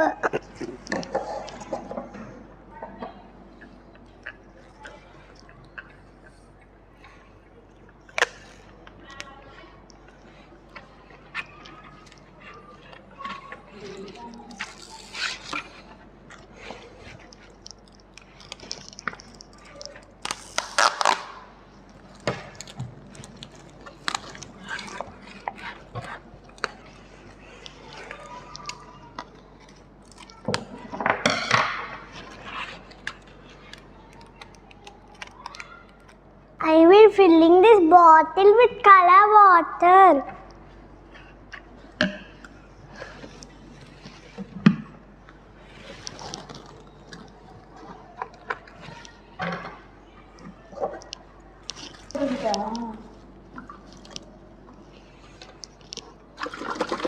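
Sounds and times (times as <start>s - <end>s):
sticky tape crinkling: 10.0s - 30.8s, 32.1s - 36.3s, 45.6s - 49.3s, 50.2s - 56.3s
plastic bottle crinkling: 16.5s - 30.8s, 45.6s - 49.7s, 50.4s - 57.0s
water pouring: 56.4s - 57.0s.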